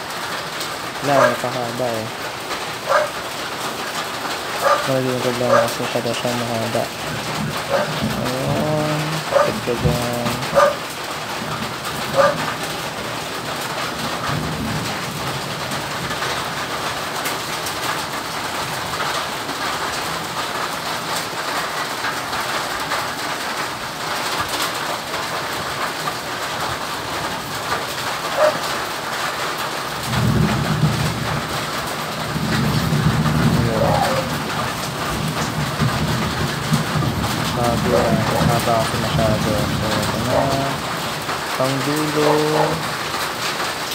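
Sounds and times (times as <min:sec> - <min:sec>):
low cooing: 0:33.6 - 0:34.4.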